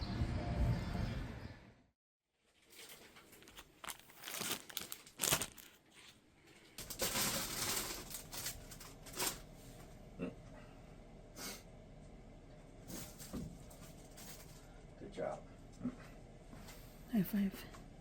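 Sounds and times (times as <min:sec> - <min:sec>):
crinkling and rustling: 0:02.4 - 0:09.8, 0:12.9 - 0:14.7.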